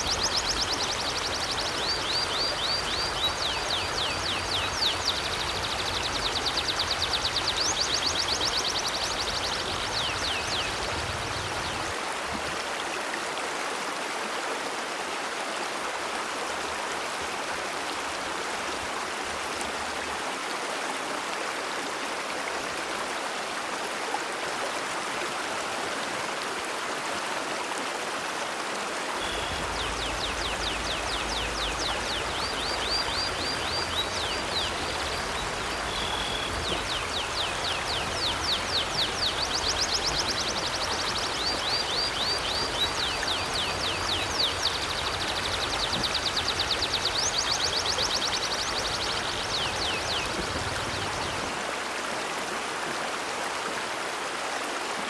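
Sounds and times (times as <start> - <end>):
stream flowing: 0.0 - 55.0
bird chirping in high trills: 29.2 - 45.8.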